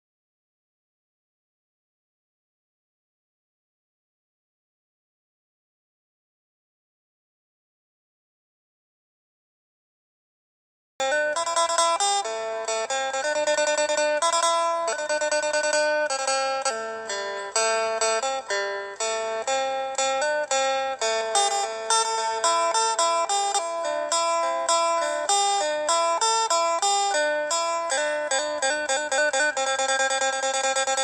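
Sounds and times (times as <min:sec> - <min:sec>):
plucked string instrument melody: 0:11.0 - 0:31.0.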